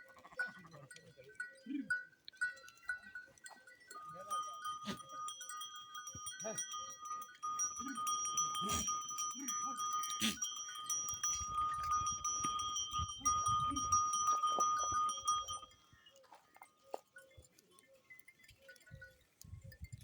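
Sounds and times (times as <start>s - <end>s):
goats bleating: 7.8s - 10.5s.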